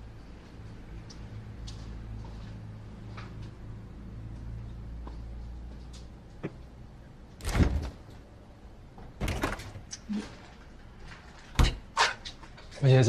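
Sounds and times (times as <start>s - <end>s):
door shutting thud: 7.4s - 8.0s.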